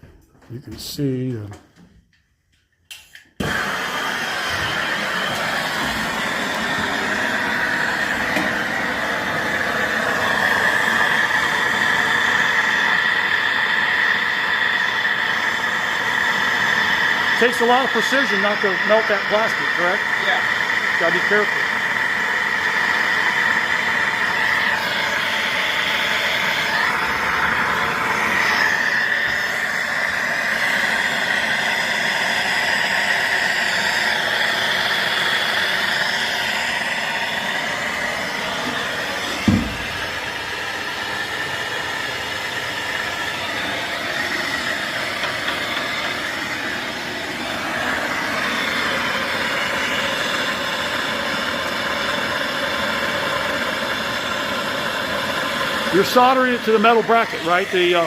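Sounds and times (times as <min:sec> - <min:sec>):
soldering torch hissing: 0:03.4 - 0:58.0
dull thump: 0:39.4 - 0:39.9.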